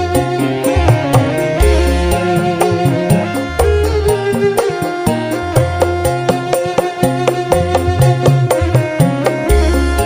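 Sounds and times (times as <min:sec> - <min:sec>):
sustained instrument tones: 0:00.0 - 0:05.5
deep bass notes: 0:00.0 - 0:06.6
drum beat: 0:00.4 - 0:06.5.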